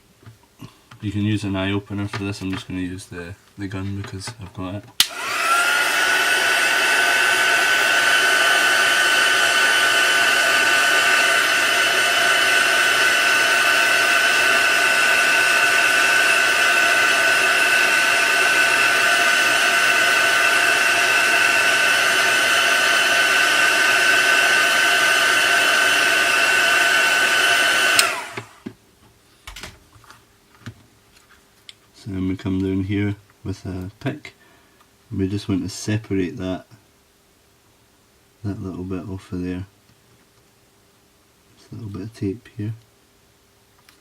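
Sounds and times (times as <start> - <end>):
heat gun switch click: 5.0 - 5.4, 27.9 - 28.5
heat gun blowing with fan whine: 5.0 - 28.8.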